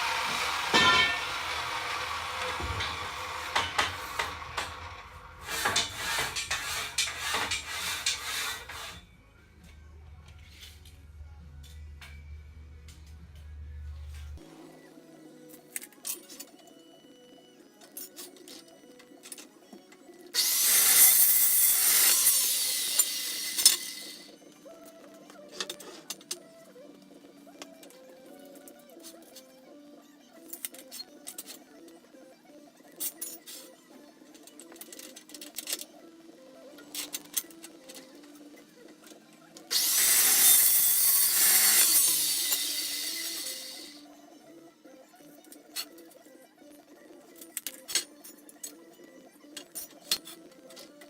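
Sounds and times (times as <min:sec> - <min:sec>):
cold cut saw cutting steel: 0:00.0 - 0:09.1, 0:20.4 - 0:24.4, 0:39.7 - 0:44.0
sharp metal clank: 0:00.7 - 0:01.4.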